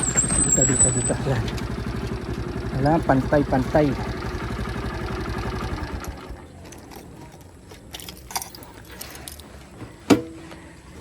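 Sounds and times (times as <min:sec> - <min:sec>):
motorcycle engine cutting off: 0:00.0 - 0:06.4
metallic clinks and rattles: 0:06.5 - 0:09.7.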